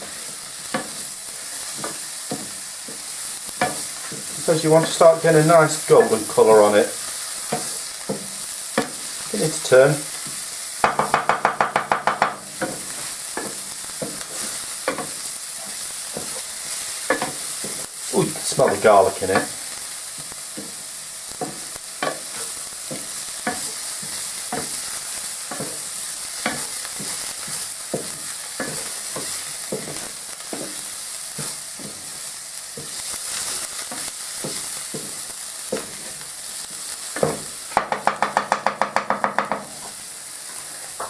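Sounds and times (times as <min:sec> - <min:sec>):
garlic sizzling in oil: 0:00.0 - 0:41.0
utensil knocking against pan: 0:10.8 - 0:12.8, 0:37.2 - 0:39.8.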